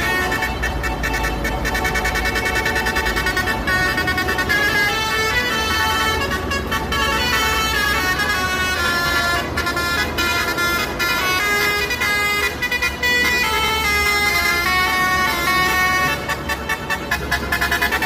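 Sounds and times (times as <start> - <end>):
truck horns playing quick melody: 0.0 - 18.0.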